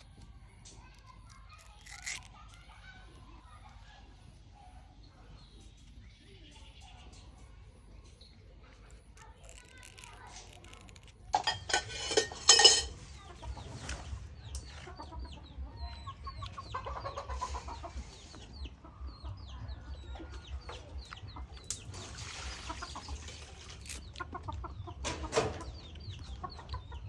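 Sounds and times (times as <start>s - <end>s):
chickens clucking: 10.6s - 27.0s.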